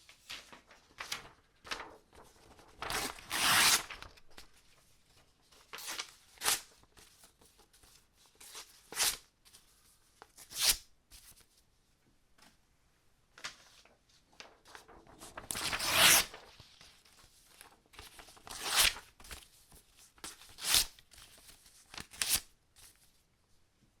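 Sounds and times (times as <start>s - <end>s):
paper tearing: 2.8s - 4.2s, 14.7s - 16.5s, 18.4s - 19.1s.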